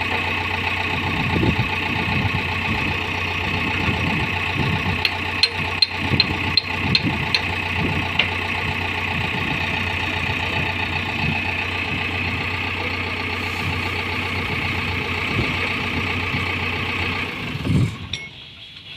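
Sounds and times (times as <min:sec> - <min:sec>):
diesel engine idling: 0:00.0 - 0:18.9
sharp metallic clicks: 0:05.0 - 0:07.6.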